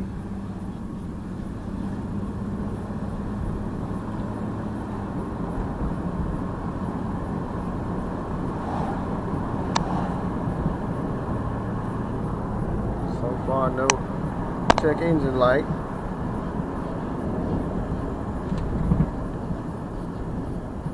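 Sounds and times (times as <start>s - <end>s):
engine and road noise in cabin: 0.0s - 20.9s
sharp click: 14.7s - 14.9s.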